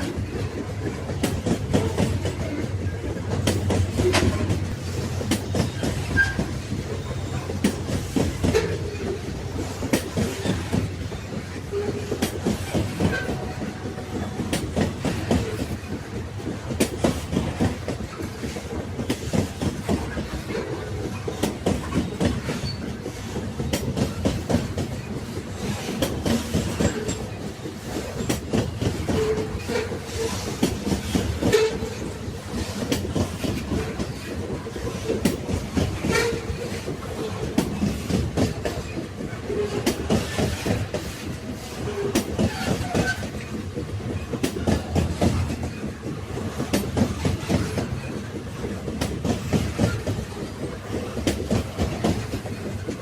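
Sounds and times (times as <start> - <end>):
railway carriages rumbling: 0.0 - 53.0
wheels clicking over rails: 0.0 - 53.0.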